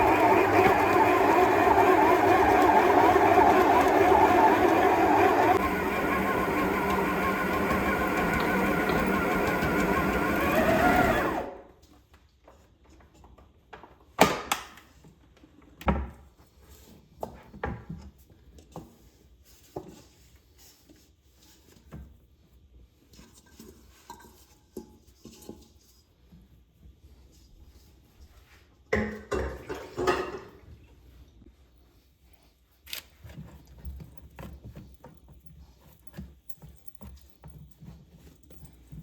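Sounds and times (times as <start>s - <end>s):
motor whirring: 0.0s - 11.6s.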